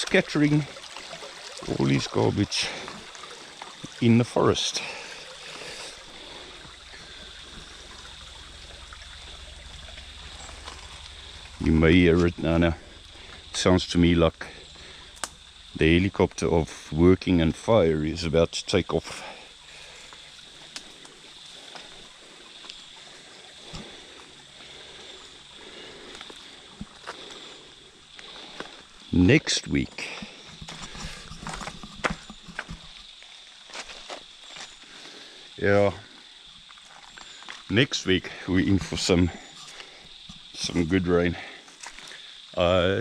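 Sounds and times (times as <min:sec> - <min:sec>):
stream trickling: 0:00.0 - 0:43.0
low pulsing hum: 0:04.8 - 0:18.6
distant helicopter running: 0:05.9 - 0:16.4
light ticks: 0:15.2 - 0:15.4.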